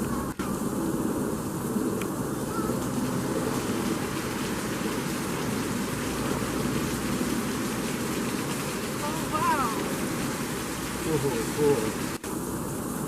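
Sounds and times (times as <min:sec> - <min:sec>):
rush of falling water: 0:00.0 - 0:13.0.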